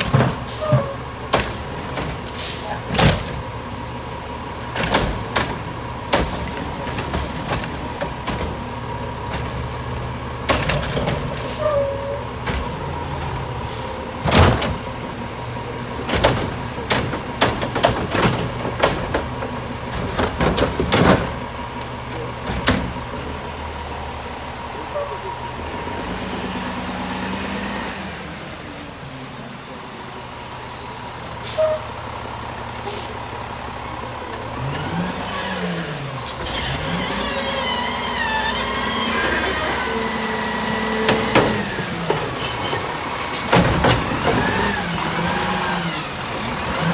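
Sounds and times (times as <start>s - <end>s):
garbage truck engine running: 0.0s - 46.9s
sharp bangs and clanks: 16.0s - 21.6s, 38.4s - 45.2s.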